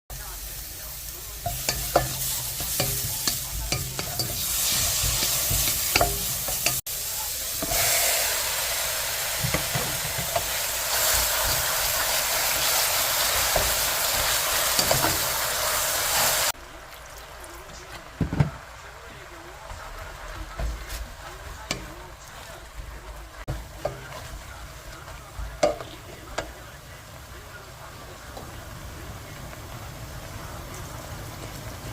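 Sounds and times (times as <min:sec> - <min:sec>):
food sizzling in a pot: 0:00.1 - 0:31.9
utensil tapping against pot: 0:01.4 - 0:06.8, 0:25.6 - 0:26.5.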